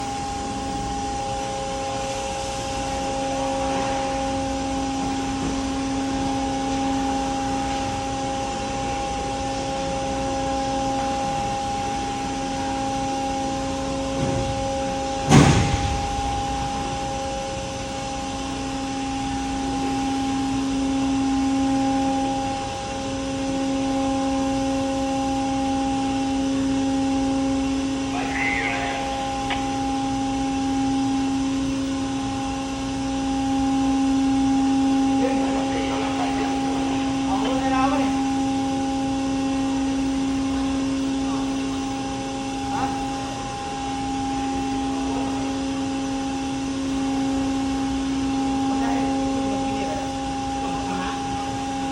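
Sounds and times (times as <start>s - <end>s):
lift machinery humming: 0.0s - 51.9s
loud metal clank: 15.2s - 17.1s.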